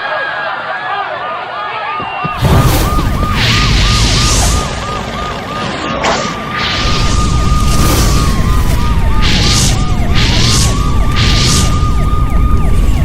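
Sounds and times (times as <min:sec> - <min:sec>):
siren wailing: 0:01.7 - 0:13.0
loud whooshes: 0:05.9 - 0:12.2.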